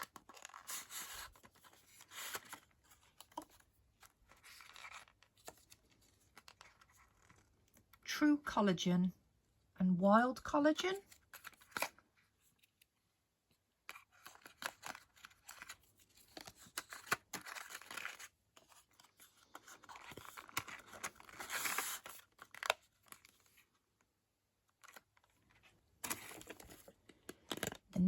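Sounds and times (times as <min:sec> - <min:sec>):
packaging rustling: 0:13.9 - 0:23.6, 0:24.8 - 0:28.0.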